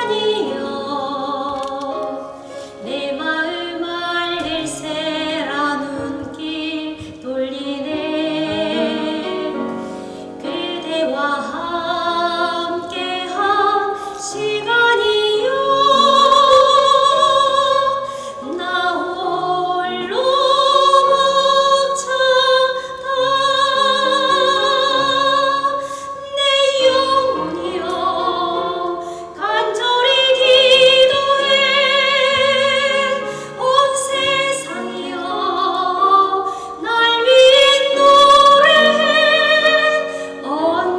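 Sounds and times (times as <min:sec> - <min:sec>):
woman singing operatically: 0:10.5 - 0:40.9.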